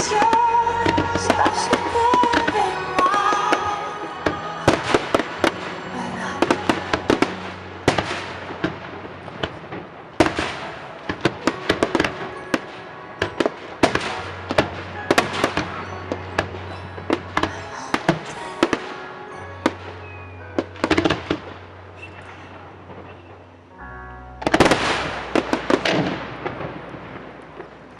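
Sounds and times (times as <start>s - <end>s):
fireworks banging and crackling: 0.0s - 23.5s, 24.4s - 27.9s
music: 0.0s - 27.9s.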